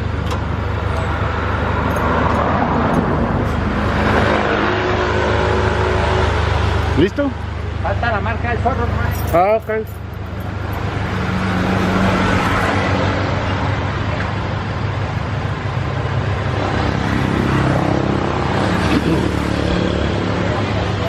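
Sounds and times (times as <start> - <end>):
road traffic noise: 0.0 - 21.0
vehicle engine: 0.0 - 21.0.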